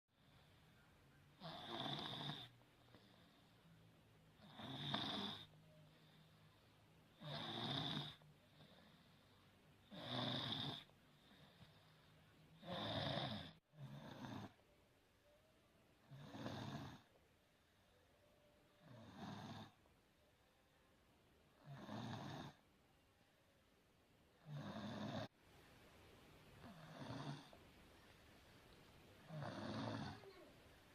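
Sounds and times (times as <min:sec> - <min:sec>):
baby snoring: 0:01.4 - 0:03.4, 0:04.4 - 0:05.6, 0:07.1 - 0:09.2, 0:09.9 - 0:10.9, 0:12.6 - 0:14.6, 0:16.0 - 0:17.1, 0:18.7 - 0:19.8, 0:21.6 - 0:22.6, 0:24.4 - 0:25.4, 0:26.6 - 0:27.6, 0:29.2 - 0:30.5.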